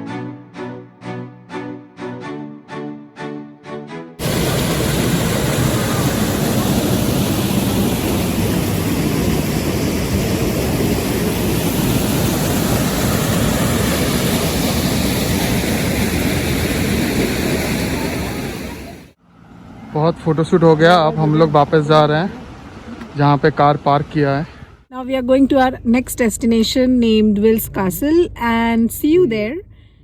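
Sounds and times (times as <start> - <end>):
loud steady rushing noise: 4.2 - 19.2.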